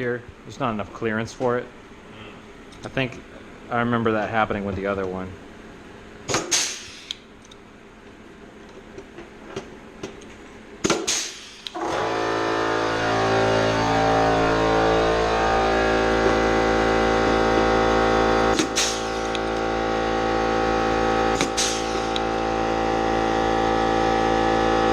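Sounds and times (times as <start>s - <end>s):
pneumatic rivet puller pops: 6.3s - 7.3s, 10.8s - 11.8s, 18.6s - 19.5s, 21.4s - 22.2s
machine humming: 11.6s - 24.9s.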